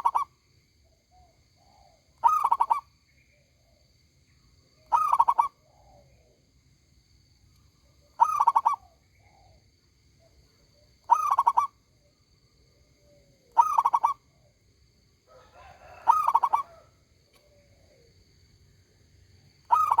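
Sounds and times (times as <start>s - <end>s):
dove cooing: 0.0s - 0.3s, 1.2s - 2.8s, 4.9s - 6.4s, 8.1s - 9.6s, 11.1s - 11.7s, 13.0s - 14.5s, 15.3s - 18.2s, 19.7s - 20.0s.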